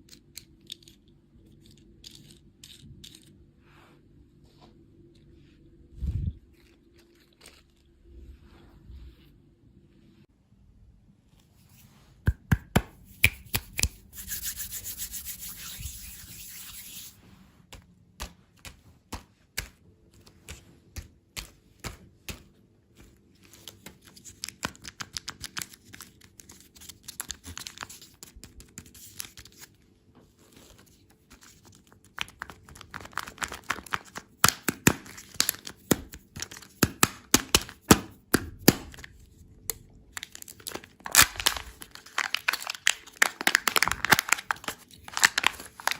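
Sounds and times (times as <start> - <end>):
sharp clicks and taps: 12.3 - 14.0
packaging rubbing and scratching: 12.9 - 17.2, 30.5 - 36.8, 40.2 - 45.9.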